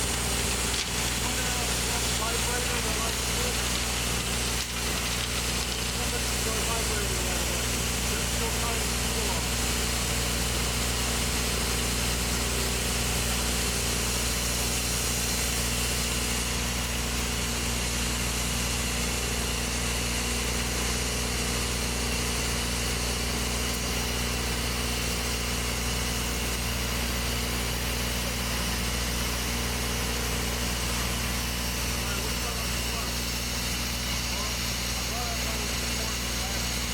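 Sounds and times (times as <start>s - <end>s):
heavy engine humming: 0.0s - 17.1s.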